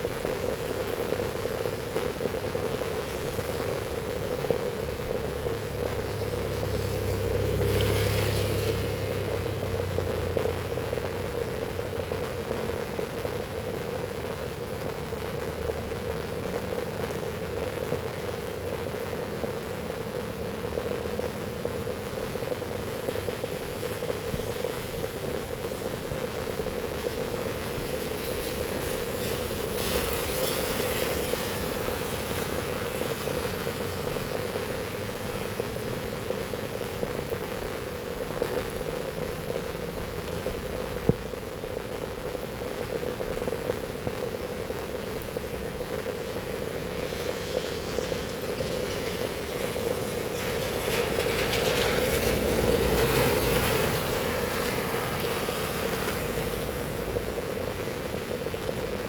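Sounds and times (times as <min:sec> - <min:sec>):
heavy rain falling: 0:00.0 - 0:59.0.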